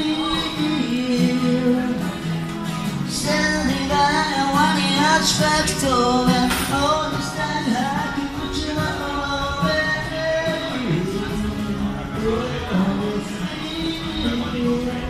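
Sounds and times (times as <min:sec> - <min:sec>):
instrumental backing music: 0:00.0 - 0:15.0
person singing with vibrato: 0:03.0 - 0:15.0.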